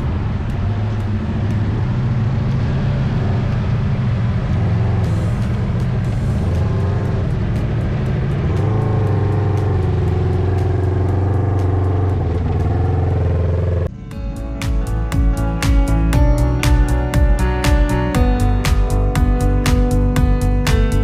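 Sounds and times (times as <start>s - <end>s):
music with plucked notes: 0.0s - 21.0s
utility vehicle engine running: 0.0s - 21.0s.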